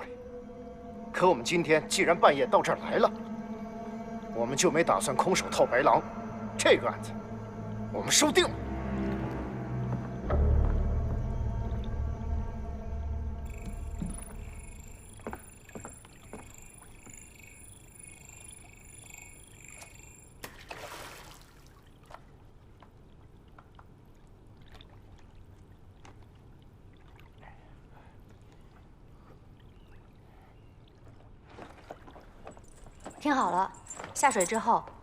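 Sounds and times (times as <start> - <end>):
faint high sustained tone: 0.0 - 10.4, 11.9 - 20.4
water lapping and sloshing: 0.0 - 35.0.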